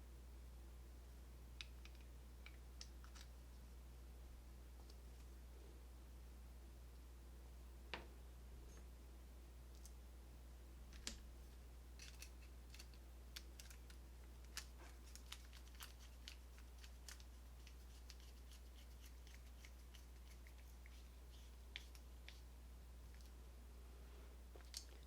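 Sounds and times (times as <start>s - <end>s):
small metal clicks and scrapes: 12.0s - 17.3s.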